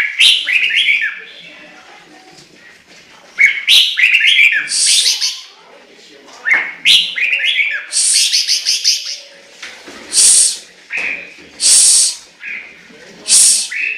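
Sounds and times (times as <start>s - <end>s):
bird singing whistled phrases: 3.4s - 5.4s, 6.5s - 9.2s, 13.3s - 13.9s.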